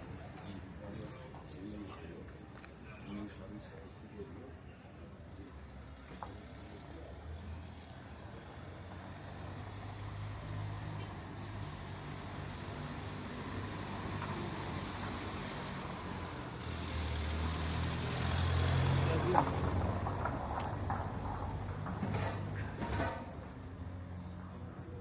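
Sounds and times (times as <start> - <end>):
vehicle engine rumbling: 10.9 - 24.9.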